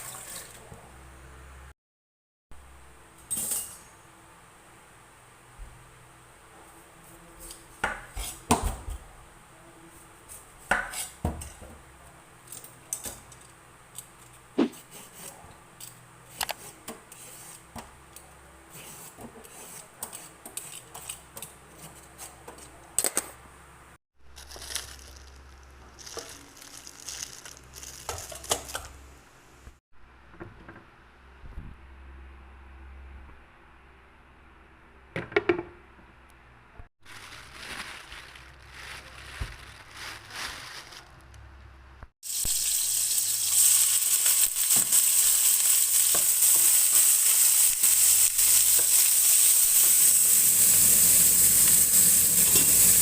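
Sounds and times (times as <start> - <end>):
utensils clinking against dishes: 3.2 - 4.0.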